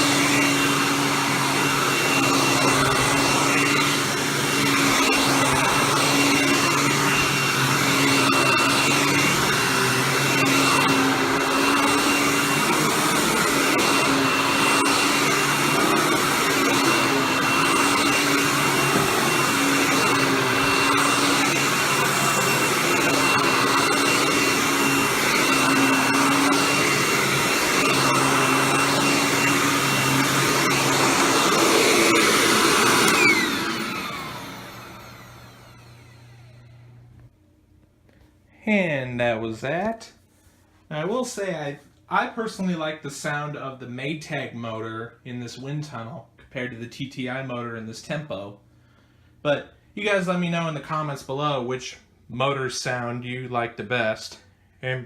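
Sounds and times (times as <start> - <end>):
vacuum motor winding down: 0.0 - 37.3
vacuum cleaner motor whining: 0.0 - 37.4.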